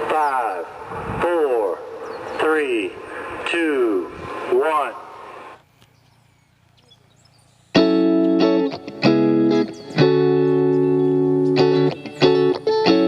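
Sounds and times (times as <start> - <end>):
loud held chords: 7.8 - 13.0.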